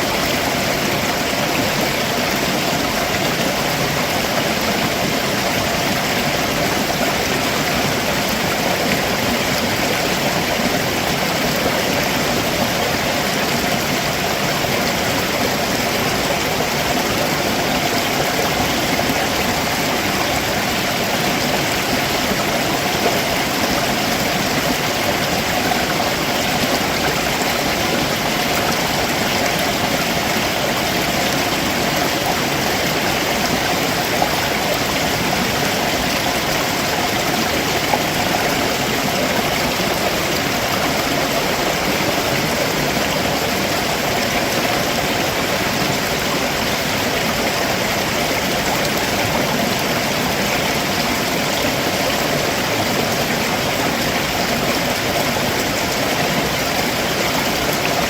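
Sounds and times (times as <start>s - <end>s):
stream water rushing over rocks: 0.0s - 58.0s.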